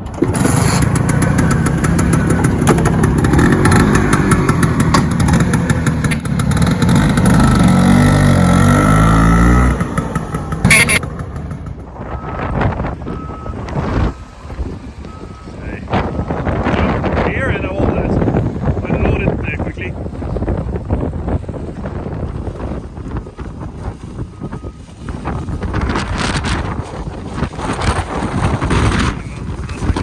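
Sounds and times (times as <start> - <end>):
loud engine running: 0.0 - 12.6.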